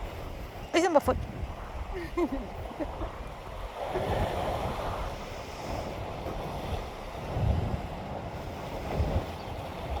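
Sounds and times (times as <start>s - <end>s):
ocean surf washing on shore: 0.0s - 10.0s
wind buffeting microphone: 0.0s - 10.0s.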